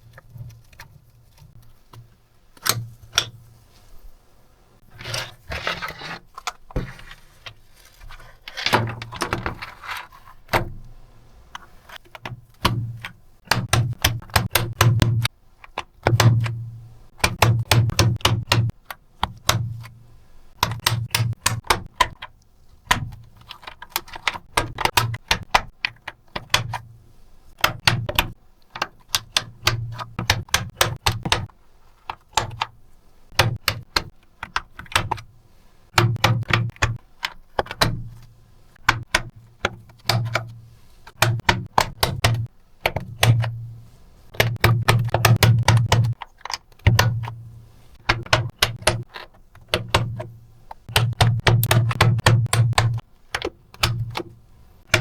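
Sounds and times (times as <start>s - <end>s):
rubbing noise: 4.8s - 10.5s
typing on computer keyboard: 44.3s - 47.3s.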